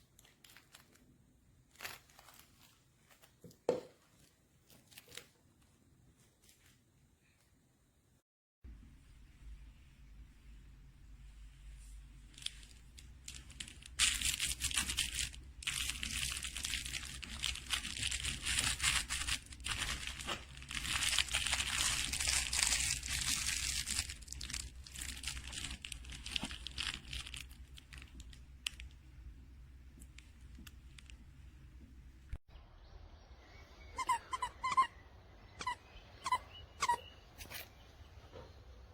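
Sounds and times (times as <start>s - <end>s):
plush dog toy crinkling: 12.2s - 29.0s.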